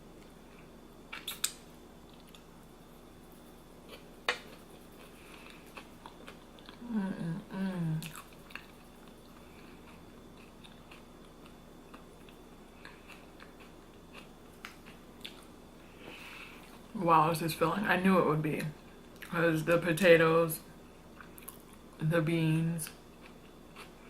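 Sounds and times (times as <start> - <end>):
chewing and mouth sounds: 1.1 - 2.5, 3.8 - 6.9, 7.8 - 15.5, 21.1 - 21.9, 22.8 - 24.0
closed-mouth vocal sound: 6.7 - 8.2.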